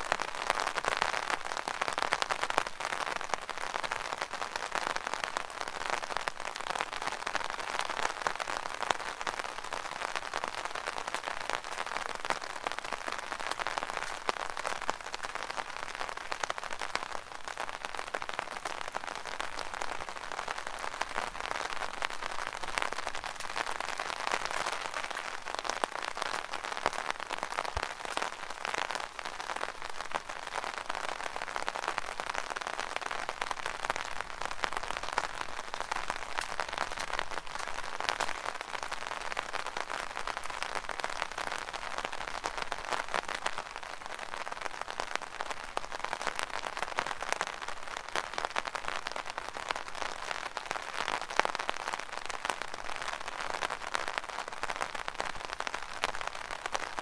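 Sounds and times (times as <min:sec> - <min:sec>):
rain drumming on an umbrella: 0:00.0 - 0:57.0.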